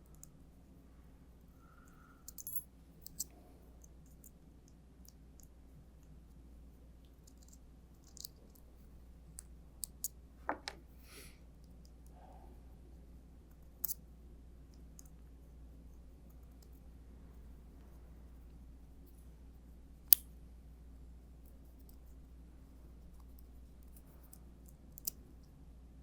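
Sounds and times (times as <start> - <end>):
metallic clicks of screws loosening: 2.3 - 3.3.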